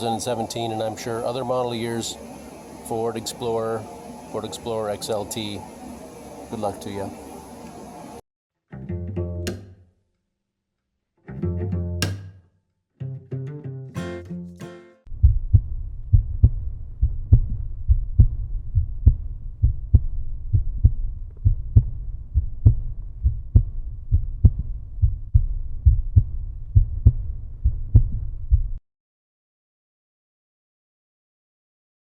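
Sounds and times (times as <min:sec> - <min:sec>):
heartbeat-like thudding beat: 0:15.1 - 0:28.8.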